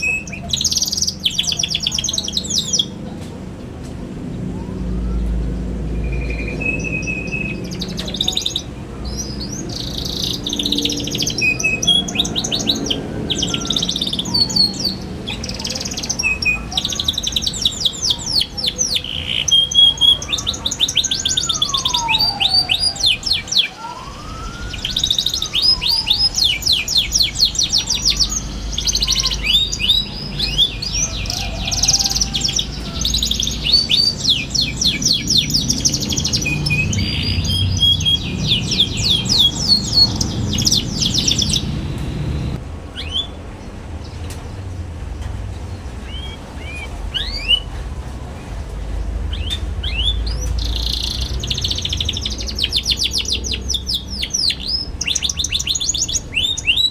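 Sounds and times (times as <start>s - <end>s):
canary chattering trills: 0.0s - 43.3s, 46.0s - 56.9s
low rising and falling whistles: 21.0s - 42.6s.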